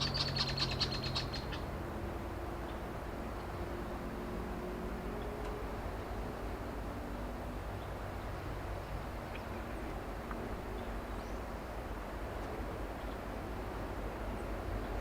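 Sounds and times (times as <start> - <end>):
faint bird chirps: 0.0 - 1.6.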